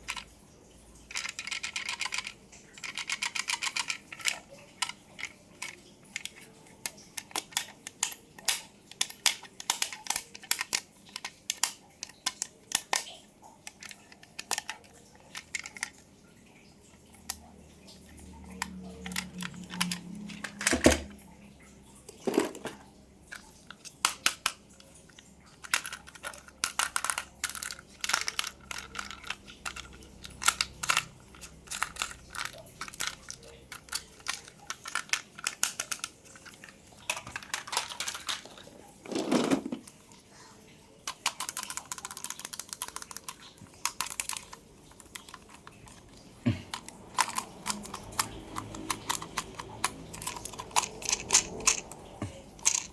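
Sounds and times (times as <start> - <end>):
plastic and cardboard crinkling: 41.0 - 52.9.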